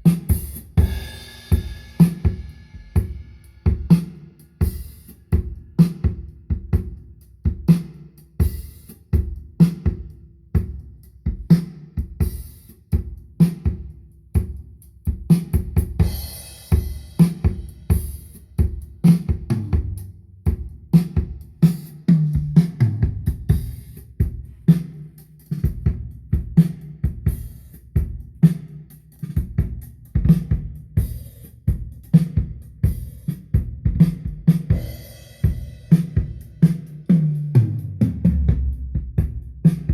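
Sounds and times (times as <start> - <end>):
drum-heavy music: 0.0 - 39.9.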